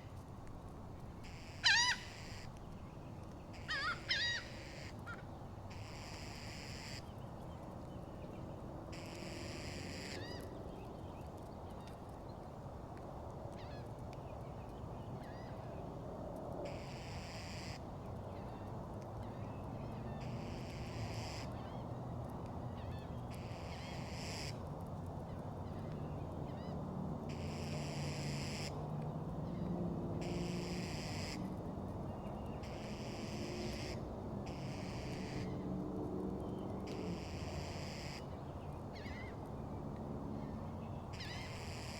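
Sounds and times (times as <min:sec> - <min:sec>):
seagulls calling: 0:01.4 - 0:02.5, 0:03.6 - 0:06.2.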